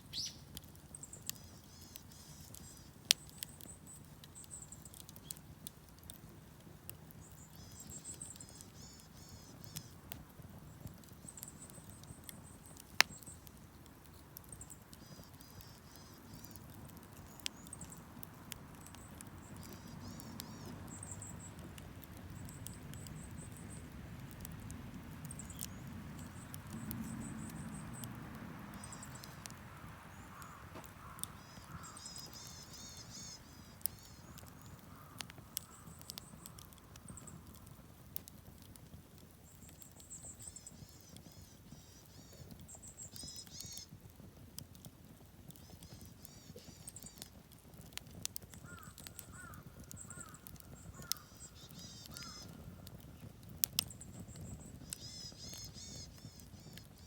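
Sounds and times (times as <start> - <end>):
wood fire crackling: 0.0 - 57.0
birds chirping: 7.1 - 10.0, 14.4 - 24.4, 25.2 - 37.6, 48.0 - 57.0.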